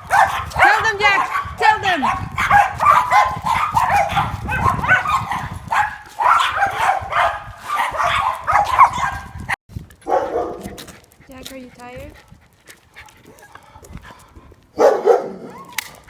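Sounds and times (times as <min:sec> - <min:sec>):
dog barking in short yaps: 0:00.1 - 0:09.4, 0:14.8 - 0:15.8.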